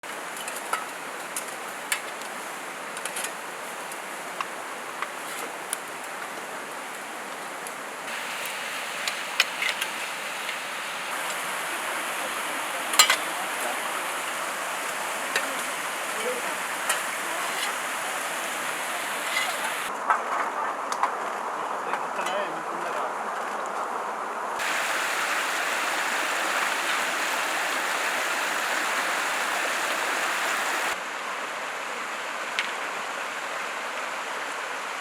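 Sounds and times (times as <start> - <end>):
steady rain falling: 0.1 - 19.9, 24.6 - 31.0.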